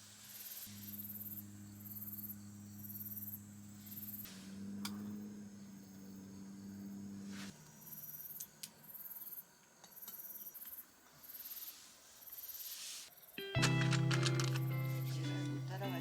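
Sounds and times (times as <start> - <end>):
insects trilling: 0.0 - 16.0
low hum: 0.7 - 7.5.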